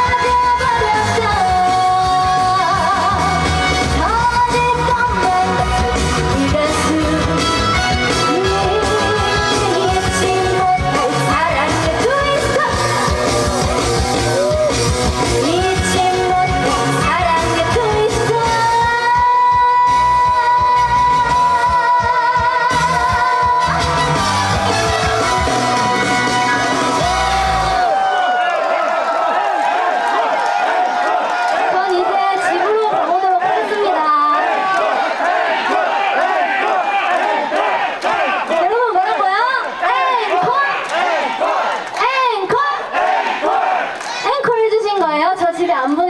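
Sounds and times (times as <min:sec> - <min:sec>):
woman singing: 0:00.0 - 0:13.5, 0:15.4 - 0:24.1
band playing with steady beat: 0:22.8 - 0:27.4.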